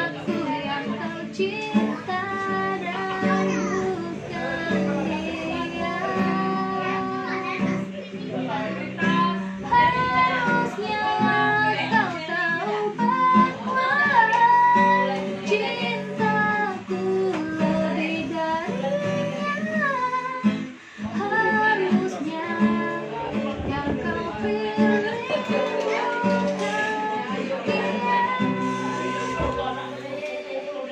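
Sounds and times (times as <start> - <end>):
child singing pop song: 0.0 - 30.9
plucked acoustic guitar: 0.0 - 30.9.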